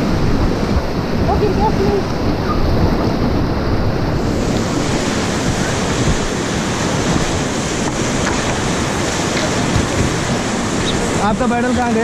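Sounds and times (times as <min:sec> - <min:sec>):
whitewater rapids rushing: 0:00.0 - 0:12.0
wind buffeting microphone: 0:00.0 - 0:12.0.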